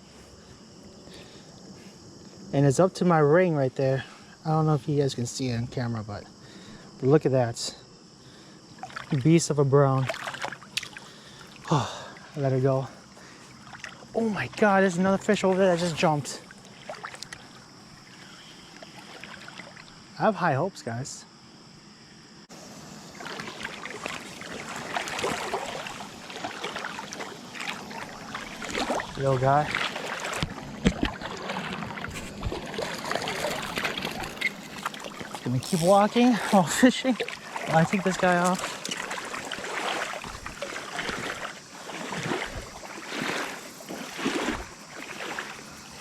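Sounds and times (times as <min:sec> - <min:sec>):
creek water splashing: 0:08.1 - 0:20.2, 0:22.5 - 0:46.0.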